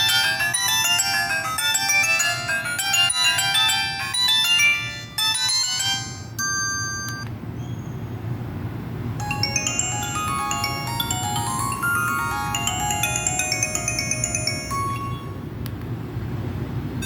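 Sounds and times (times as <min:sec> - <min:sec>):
polyphonic phone ringtone melody: 0:00.0 - 0:07.2, 0:09.2 - 0:15.6.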